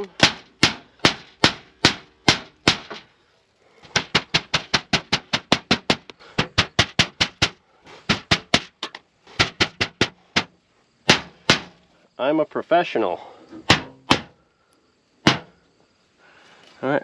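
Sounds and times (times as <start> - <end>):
hammer blows: 0.0 - 3.1, 3.8 - 11.8, 13.5 - 14.4, 15.2 - 15.6.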